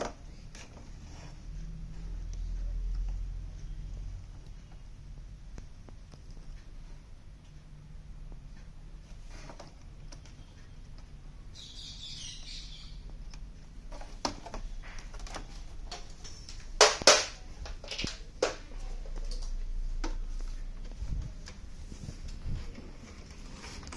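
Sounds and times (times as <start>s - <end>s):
high chirping sound: 11.5s - 13.2s.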